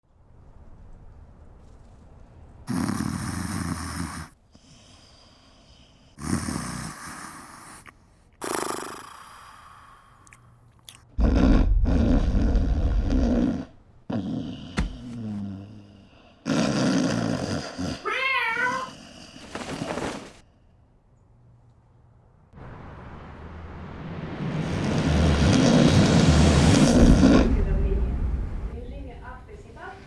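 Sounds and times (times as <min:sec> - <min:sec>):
person snoring loudly: 0:02.7 - 0:04.4, 0:06.2 - 0:07.7, 0:08.4 - 0:10.0, 0:11.2 - 0:18.1.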